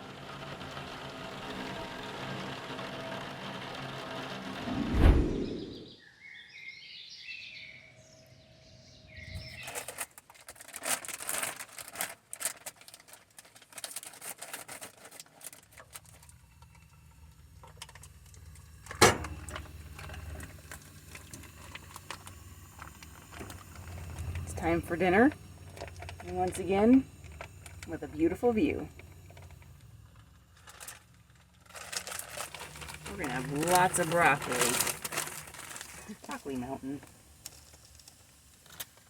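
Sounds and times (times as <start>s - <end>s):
bird chirping: 5.4s - 9.9s
clicks and crackling: 9.6s - 39.0s
low steady hum: 14.4s - 39.0s.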